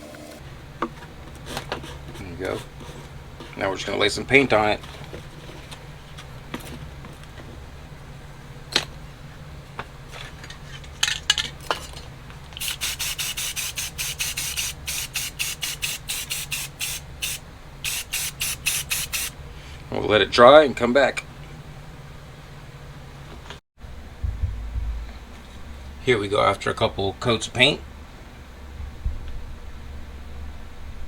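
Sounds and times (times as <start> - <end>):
steady low hum: 0.0 - 30.6
spray can bursts: 12.6 - 19.4.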